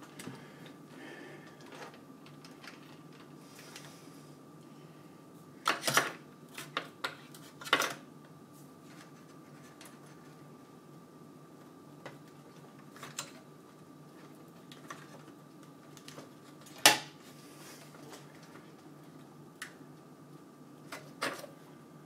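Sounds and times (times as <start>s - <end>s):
faint steady hum: 0.0s - 22.0s.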